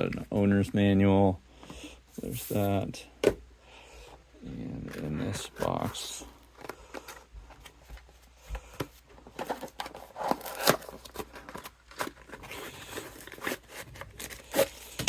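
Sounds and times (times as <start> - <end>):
packaging crinkling and scraping: 4.6 - 15.0.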